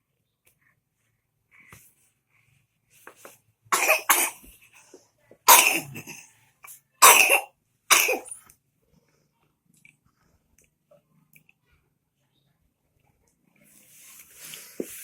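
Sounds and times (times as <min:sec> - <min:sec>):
person coughing: 0:03.8 - 0:04.4, 0:05.5 - 0:06.2, 0:07.0 - 0:08.4.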